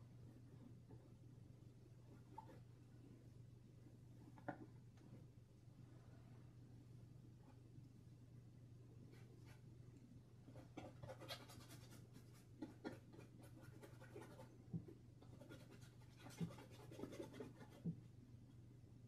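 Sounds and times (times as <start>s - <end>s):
paintbrush scratching on canvas: 10.5s - 18.0s.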